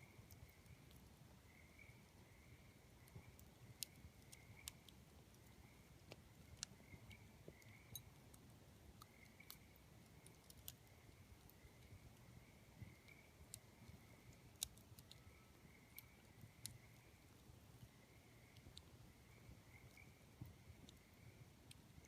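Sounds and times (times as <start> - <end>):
tree frogs calling: 0.0 - 8.2, 9.0 - 21.6
campfire crackling: 0.0 - 22.0.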